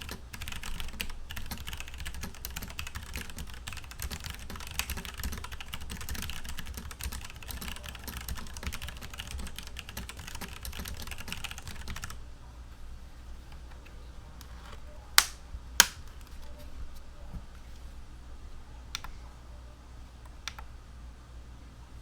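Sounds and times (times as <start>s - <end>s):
fast mechanical keyboard typing: 0.0s - 12.2s.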